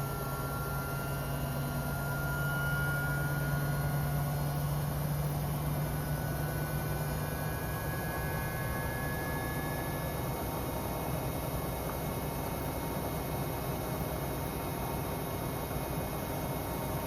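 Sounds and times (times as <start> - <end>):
thin high whine: 0.0 - 11.2.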